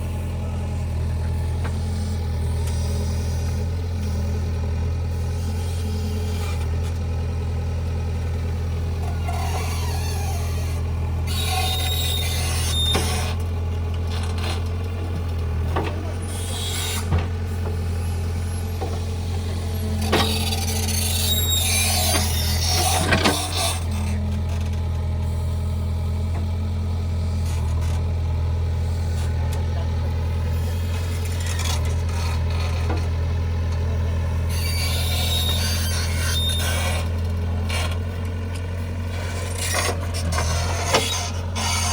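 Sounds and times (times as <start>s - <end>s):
diesel engine running: 0.0s - 41.9s
machine parts squeaking: 20.2s - 23.6s.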